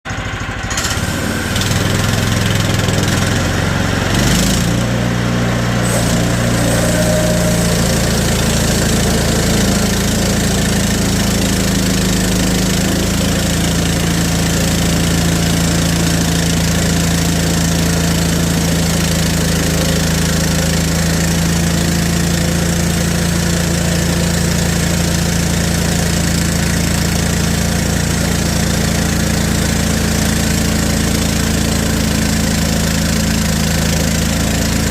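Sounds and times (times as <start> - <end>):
small gasoline engine running: 0.1 - 34.9.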